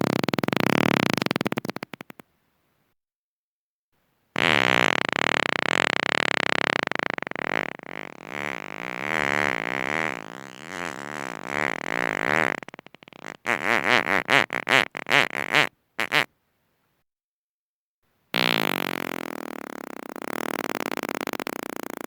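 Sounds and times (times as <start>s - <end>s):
rapid sputtering fart: 0.0s - 2.2s, 4.4s - 16.3s, 18.4s - 22.0s
long wavering fart: 4.4s - 16.3s, 18.4s - 22.0s.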